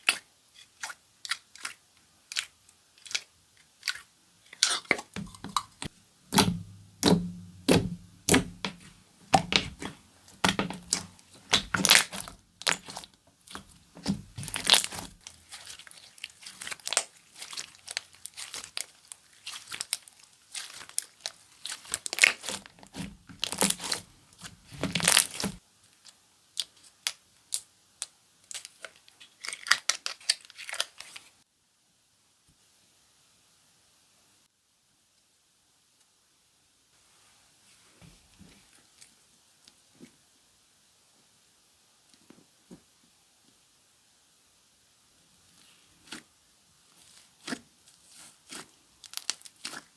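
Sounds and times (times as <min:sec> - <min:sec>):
slime crackling and popping: 0:04.6 - 0:25.6, 0:47.1 - 0:49.9.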